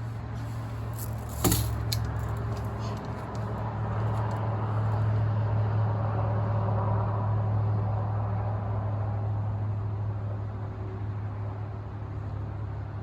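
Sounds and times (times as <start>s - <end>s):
vehicle engine rumble: 0.0s - 6.8s
road noise: 0.0s - 8.4s.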